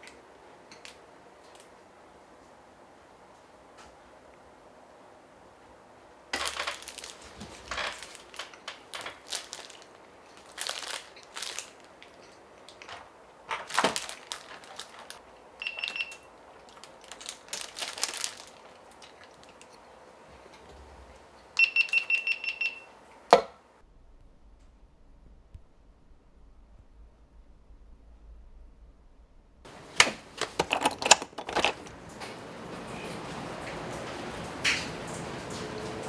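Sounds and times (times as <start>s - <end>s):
rustling and clattering: 6.4s - 15.3s, 29.7s - 36.0s.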